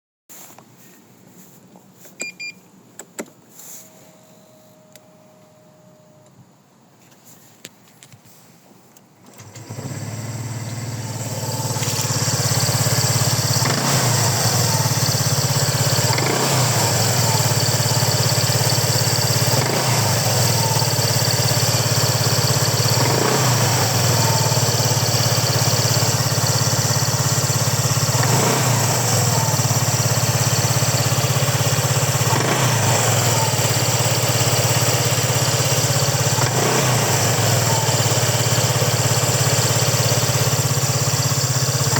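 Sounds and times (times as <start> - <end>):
scooter engine idling: 9.4 - 41.9.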